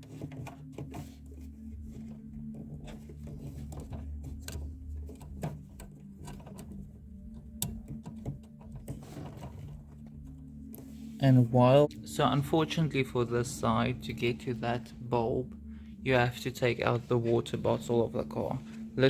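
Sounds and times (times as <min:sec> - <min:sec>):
light clicks and knocks: 0:00.0 - 0:10.9
steady low hum: 0:00.0 - 0:19.0.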